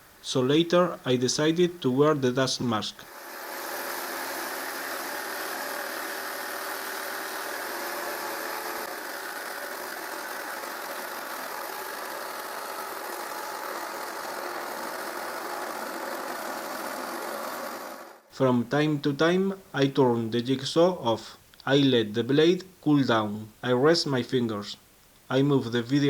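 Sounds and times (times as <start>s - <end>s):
jigsaw cutting metal sheet: 3.1s - 18.3s.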